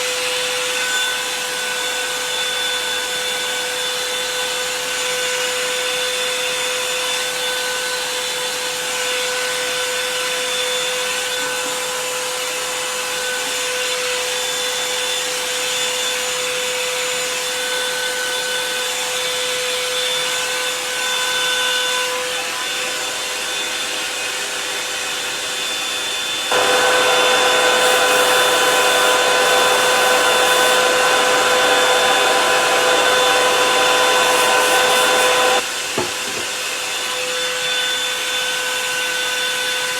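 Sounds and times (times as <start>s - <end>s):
hair dryer running: 26.4s - 36.4s.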